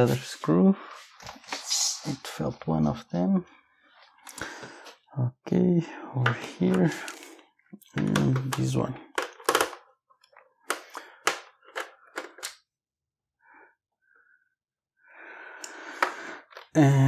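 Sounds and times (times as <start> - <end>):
screwdriver and screws clicking on plastic: 7.8 - 12.6.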